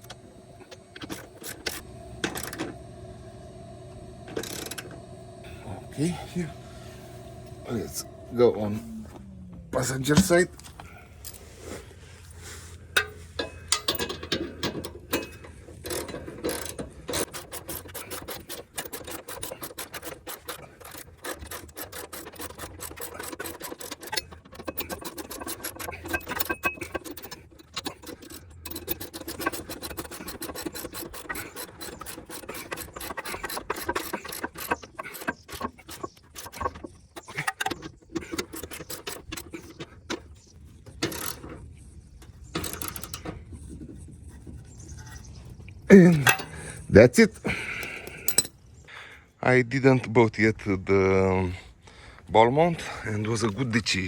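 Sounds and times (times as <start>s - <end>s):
ratchet wrench clicking: 4.3s - 4.9s, 13.0s - 39.8s, 41.0s - 41.4s.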